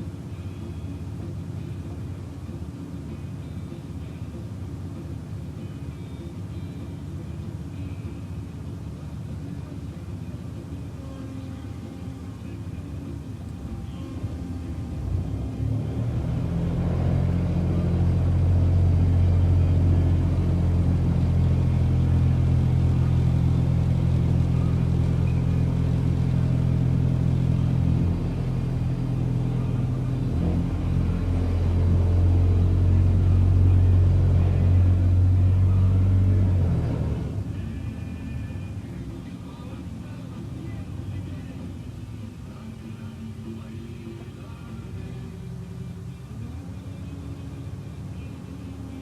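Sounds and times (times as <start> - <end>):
diesel engine: 0.0 - 49.0
vibratory pile driver hum: 0.0 - 49.0.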